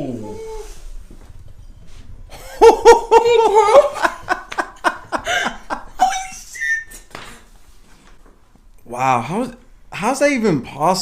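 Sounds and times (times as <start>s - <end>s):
woman laughing: 2.3s - 7.1s.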